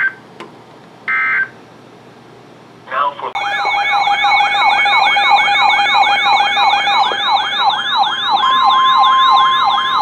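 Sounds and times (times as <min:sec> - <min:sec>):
electronic warning siren sweeping: 0:03.4 - 0:10.0.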